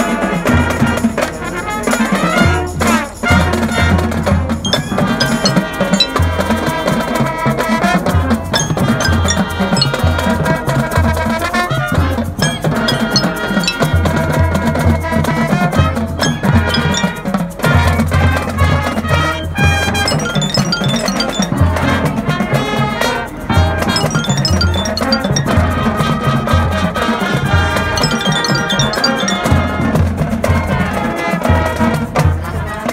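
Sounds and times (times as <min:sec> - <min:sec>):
marimba and glockenspiel ringing: 0:04.7 - 0:06.8, 0:08.6 - 0:10.4, 0:12.4 - 0:14.5, 0:16.1 - 0:17.4, 0:19.4 - 0:21.9, 0:23.9 - 0:26.0, 0:28.0 - 0:29.8.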